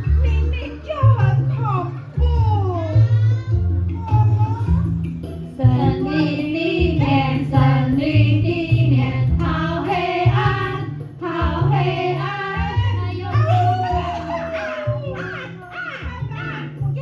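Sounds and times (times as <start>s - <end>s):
backing music with bass beat: 3.1s - 14.4s
several voices singing together: 5.6s - 14.9s.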